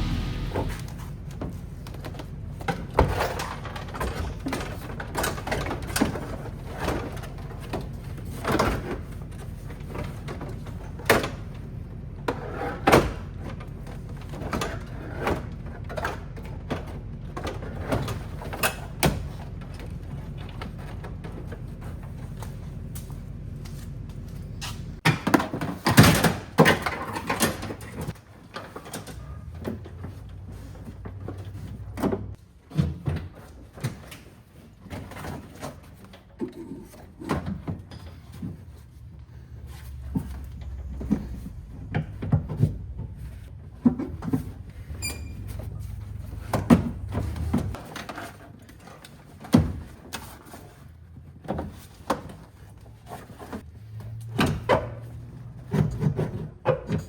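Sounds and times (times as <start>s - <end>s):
steady low hum: 0.0s - 1.8s.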